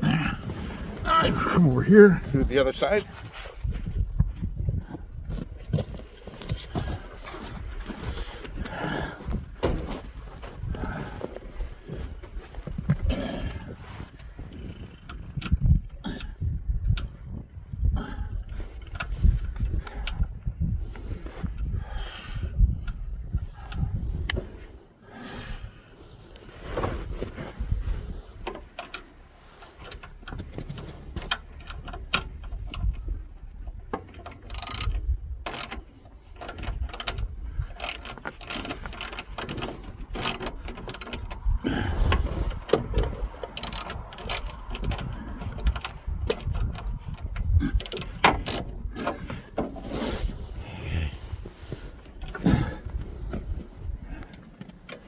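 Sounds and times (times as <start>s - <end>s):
ratchet wrench clicking: 31.2s - 31.8s, 34.5s - 35.8s, 37.8s - 41.4s, 42.7s - 44.6s, 47.7s - 48.6s.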